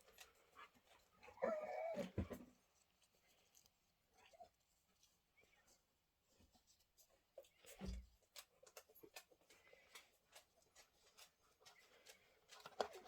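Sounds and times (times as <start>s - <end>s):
light clicks and taps: 7.4s - 13.0s.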